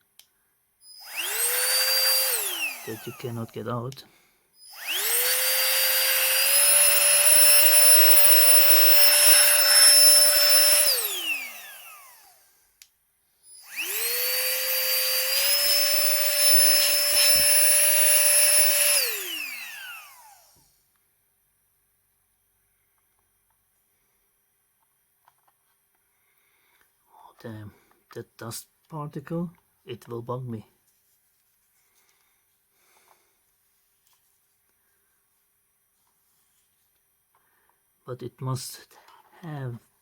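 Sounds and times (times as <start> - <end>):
electric air blower whine: 0.9 - 3.5, 4.6 - 12.6, 13.5 - 20.7.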